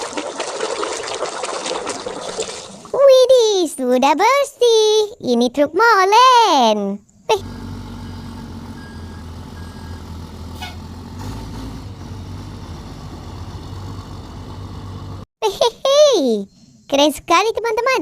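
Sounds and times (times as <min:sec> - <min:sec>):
truck engine humming: 0:07.3 - 0:15.3.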